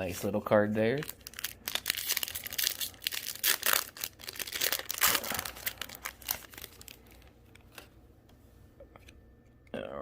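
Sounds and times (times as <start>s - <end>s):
foil pack crinkling and tearing: 0.9s - 7.3s.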